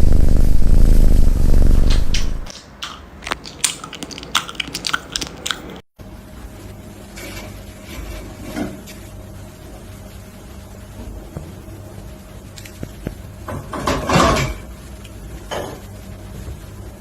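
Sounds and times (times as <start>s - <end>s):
low steady hum: 0.0s - 2.5s, 6.0s - 17.0s
crunchy chewing: 3.2s - 5.8s.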